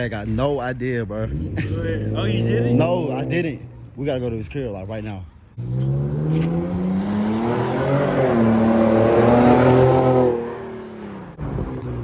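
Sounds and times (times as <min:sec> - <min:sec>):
car engine accelerating loud exhaust: 0:05.6 - 0:12.0.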